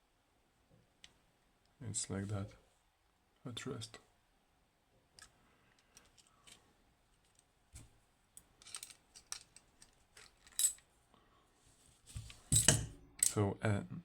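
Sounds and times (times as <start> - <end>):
small metal parts clicking and clinking: 5.8 - 6.6, 8.6 - 10.9, 12.5 - 13.4.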